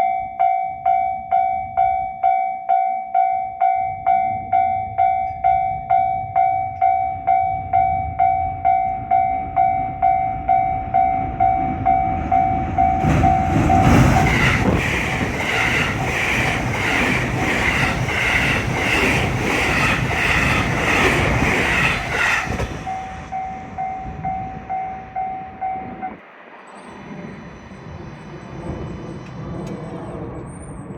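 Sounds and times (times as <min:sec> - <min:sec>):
level-crossing warning bell ringing: 0:00.0 - 0:28.3
train passing at speed: 0:03.6 - 0:30.9.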